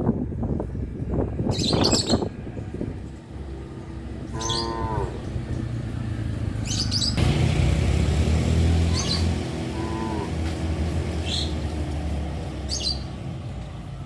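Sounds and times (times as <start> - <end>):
cattle mooing: 4.3 - 5.3, 9.6 - 10.4.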